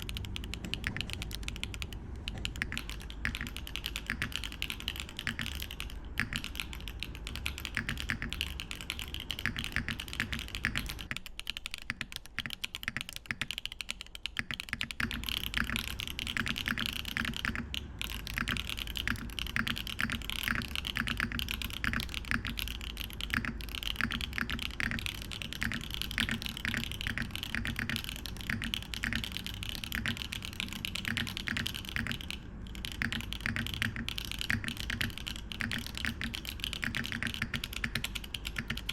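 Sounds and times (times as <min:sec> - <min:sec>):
fast mechanical keyboard typing: 0:00.0 - 0:38.9.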